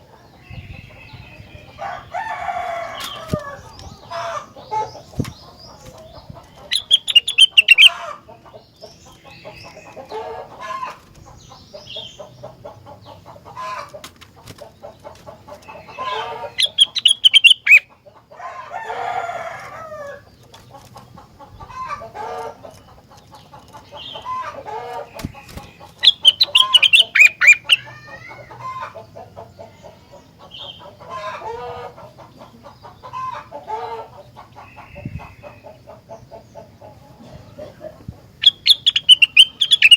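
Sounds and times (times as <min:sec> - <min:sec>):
songbird singing rapid phrases: 0:00.0 - 0:13.4, 0:14.3 - 0:18.2, 0:22.6 - 0:31.4, 0:38.2 - 0:39.9.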